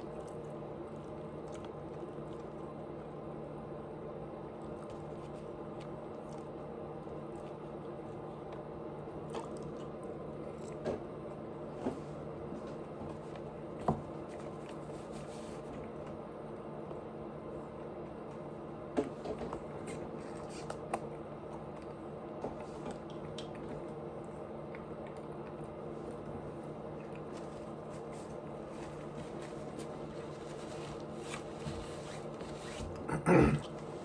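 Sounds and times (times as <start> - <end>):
steady low hum: 0.0 - 34.0
wet chewing mouth sounds: 9.2 - 10.8.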